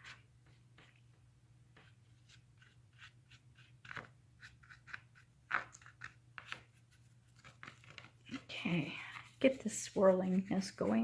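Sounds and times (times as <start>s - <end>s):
brush scrubbing on canvas: 6.5s - 11.0s.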